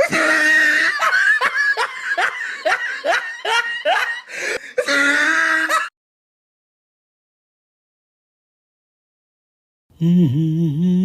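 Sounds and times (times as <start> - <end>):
person laughing: 0.0 - 5.9.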